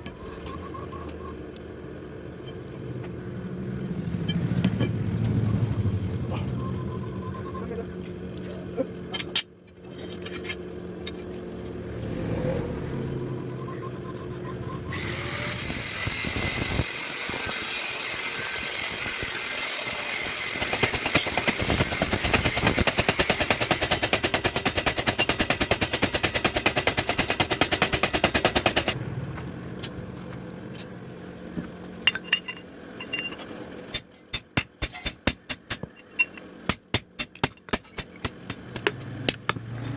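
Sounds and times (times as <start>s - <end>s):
harsh grinding noise: 14.9s - 29.0s.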